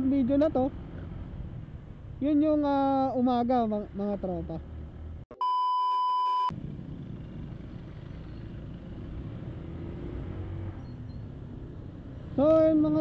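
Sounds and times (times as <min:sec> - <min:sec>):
vehicle rumble: 0:00.0 - 0:05.3, 0:06.4 - 0:13.0
electronic beep: 0:05.4 - 0:06.5.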